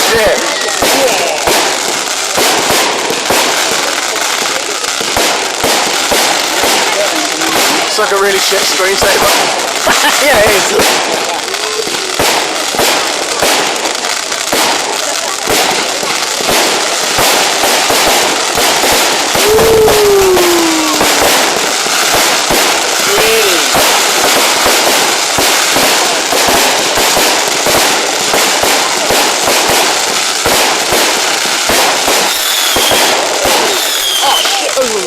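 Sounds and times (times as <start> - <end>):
fireworks crackling and popping: 0.0 - 35.0
falling firework whistle: 19.0 - 26.6, 30.4 - 34.8.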